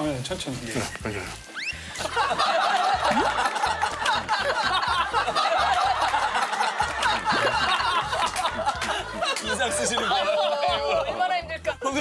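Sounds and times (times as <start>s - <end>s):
light background music: 0.0s - 12.0s
people snickering and chuckling: 1.8s - 11.4s.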